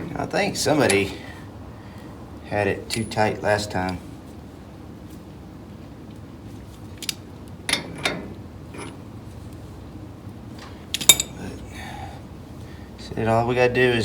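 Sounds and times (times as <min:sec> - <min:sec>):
metallic clicks and clanks of tools: 0:07.0 - 0:09.0, 0:10.9 - 0:11.4.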